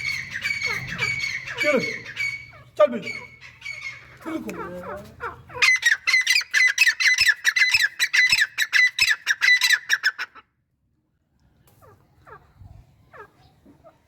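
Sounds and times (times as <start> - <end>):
francolin calling: 0.0 - 10.2.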